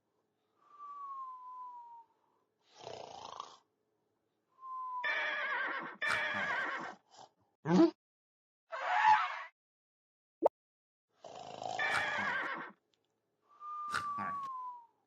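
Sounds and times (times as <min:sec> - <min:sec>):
whistling out-breath: 0:00.5 - 0:02.8, 0:04.6 - 0:05.1, 0:13.4 - 0:15.0
rasping snore: 0:02.7 - 0:03.6, 0:11.2 - 0:12.3, 0:13.9 - 0:14.5.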